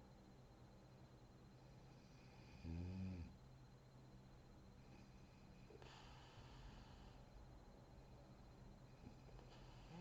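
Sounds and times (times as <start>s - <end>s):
faint low hum: 0.0s - 10.0s.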